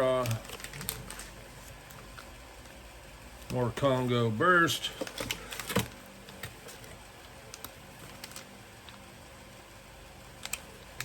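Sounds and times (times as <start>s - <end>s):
plastic packaging clicks and crinkles: 0.0s - 2.8s, 4.9s - 9.0s, 10.4s - 11.0s.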